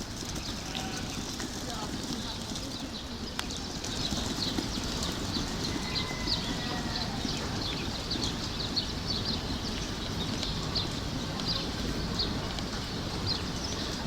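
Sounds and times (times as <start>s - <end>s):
birds chirping: 0.0s - 14.0s.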